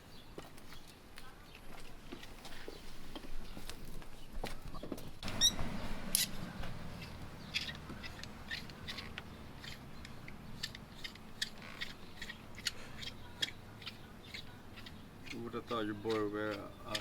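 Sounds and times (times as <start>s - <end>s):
short squeak: 5.2s - 6.4s
metallic clicks and scrapes: 5.2s - 17.0s.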